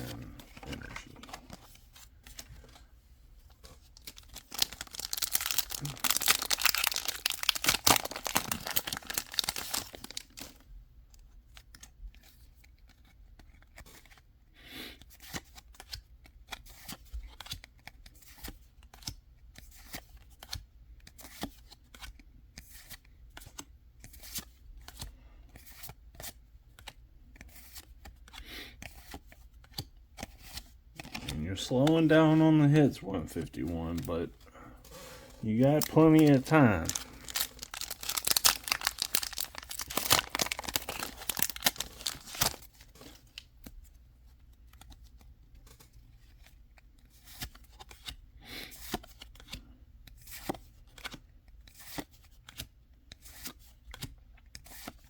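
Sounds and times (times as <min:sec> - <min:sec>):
cards clicking and rustling: 0:03.6 - 0:10.6, 0:19.8 - 0:43.4, 0:48.8 - 0:55.0
foil pack tearing and crinkling: 0:04.0 - 0:10.5, 0:35.6 - 0:42.7.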